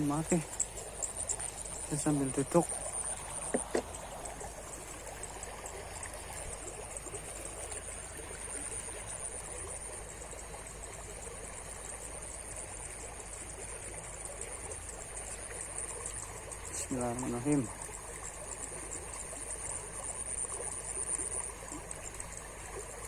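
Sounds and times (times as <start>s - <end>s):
thin high-pitched whine: 0.0s - 23.0s.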